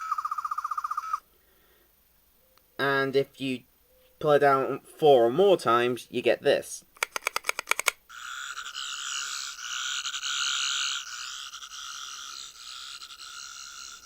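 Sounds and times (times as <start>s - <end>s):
toy clicking: 7.0s - 14.0s.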